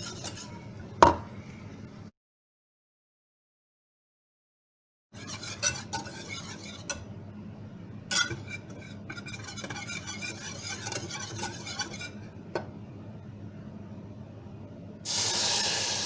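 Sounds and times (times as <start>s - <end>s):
spoon scraping in a pot: 0.0s - 0.8s, 5.1s - 7.1s, 8.1s - 12.4s.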